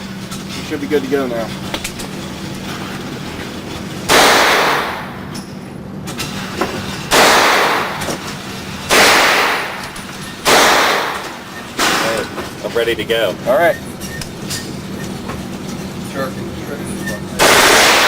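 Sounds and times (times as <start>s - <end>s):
submachine gun shots echoing: 4.1s - 5.2s, 7.1s - 8.0s, 8.9s - 9.8s, 10.4s - 11.2s, 17.4s - 18.0s.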